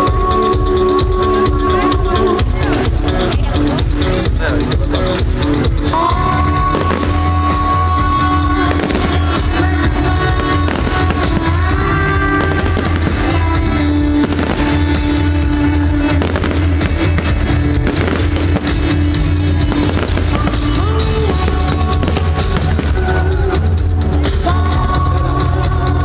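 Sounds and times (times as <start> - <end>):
loud music with bass line: 0.0 - 26.0
fireworks bangs and crackles: 6.6 - 7.8, 8.5 - 23.5.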